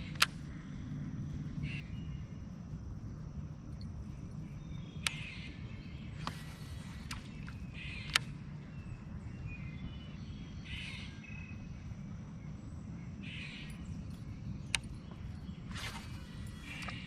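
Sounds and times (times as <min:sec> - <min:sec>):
sharp clicks: 0:00.0 - 0:00.5, 0:05.0 - 0:05.4, 0:06.2 - 0:08.4, 0:14.6 - 0:15.0
wind rumble on microphone: 0:00.0 - 0:17.0
bird harsh calls: 0:05.0 - 0:08.9, 0:09.5 - 0:11.6, 0:13.2 - 0:13.9.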